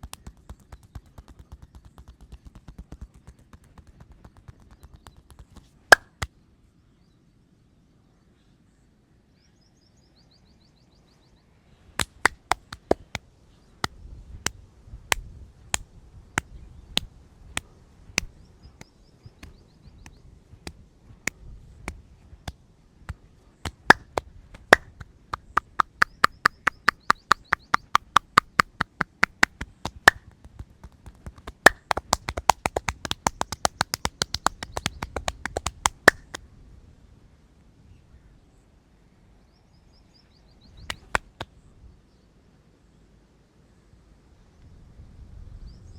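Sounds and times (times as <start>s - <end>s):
hand strikes and claps: 0.0s - 6.3s, 12.0s - 13.2s, 23.1s - 36.4s, 40.9s - 41.5s.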